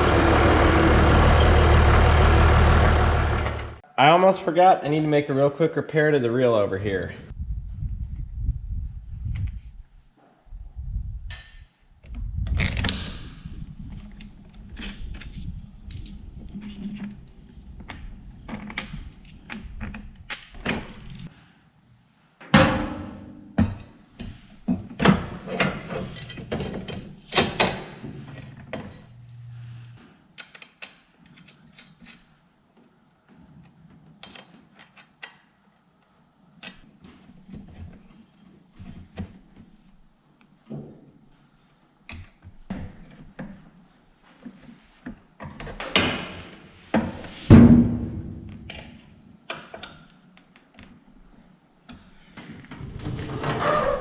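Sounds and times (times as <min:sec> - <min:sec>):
low hum: 0:00.0 - 0:03.8, 0:28.9 - 0:30.0
metal clanks and creaks: 0:52.4 - 0:54.0.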